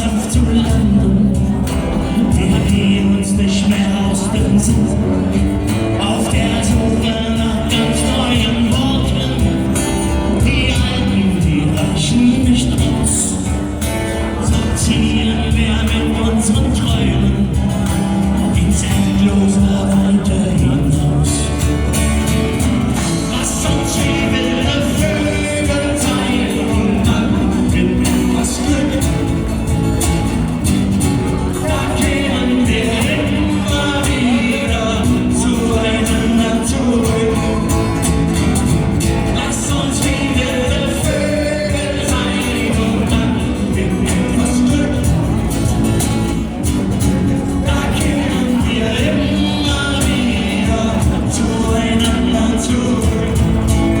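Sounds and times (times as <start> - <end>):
live band playing: 0.0 - 54.0.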